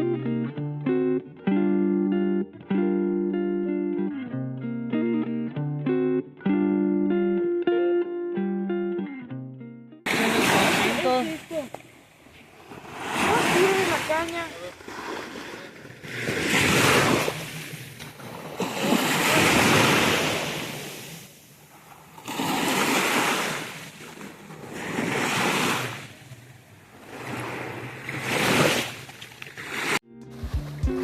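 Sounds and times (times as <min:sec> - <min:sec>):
sea waves breaking on beach: 0:10.1 - 0:30.0.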